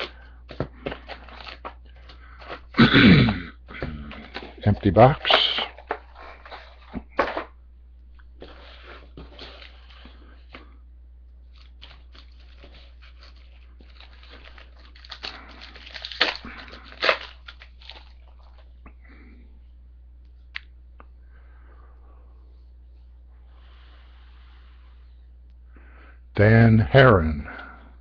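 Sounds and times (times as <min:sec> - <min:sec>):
cards being handled: 0:00.0 - 0:02.8, 0:03.7 - 0:07.5
foil wrappers crinkling and tearing: 0:00.0 - 0:07.5, 0:08.4 - 0:10.6, 0:11.4 - 0:18.8
steady low hum: 0:00.0 - 0:28.0.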